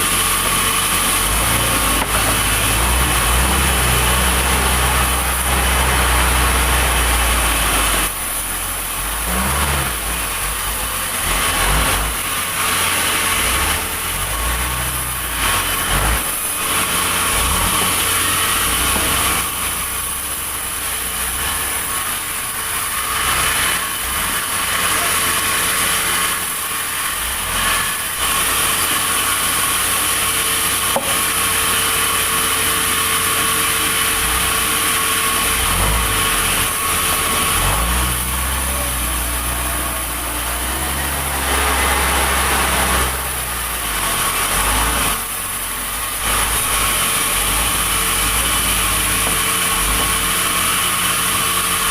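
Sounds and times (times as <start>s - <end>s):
sawmill saw whining: 0.0s - 51.9s.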